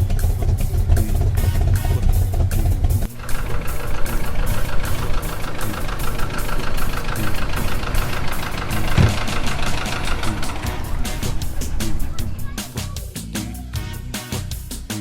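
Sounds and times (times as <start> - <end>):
engine running with fast pulsing: 0.0 - 12.9
brief low thump: 8.9 - 10.6.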